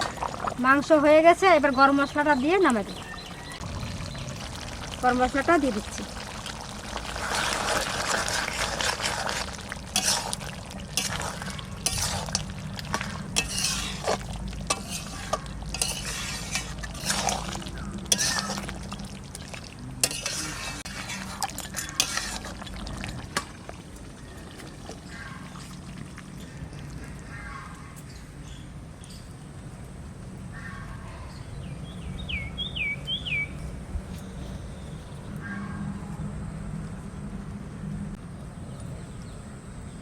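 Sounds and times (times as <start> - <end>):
steady background noise: 0.0 - 40.0
spoon scraping and clinking pot: 7.6 - 18.9, 20.0 - 22.7.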